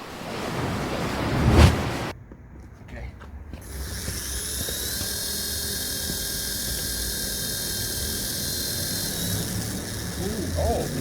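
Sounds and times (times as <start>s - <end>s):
small electric motor whining: 3.6s - 11.0s.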